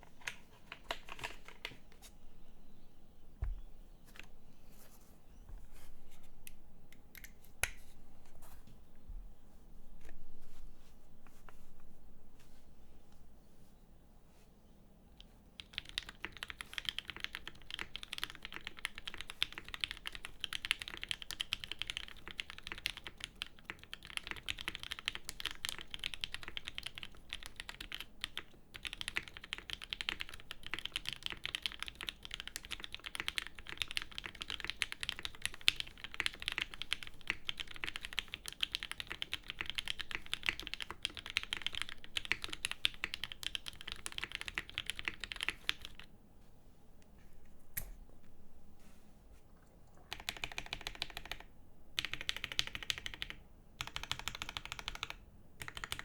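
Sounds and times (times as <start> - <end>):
fast mechanical keyboard typing: 15.6 - 46.1, 50.1 - 56.0.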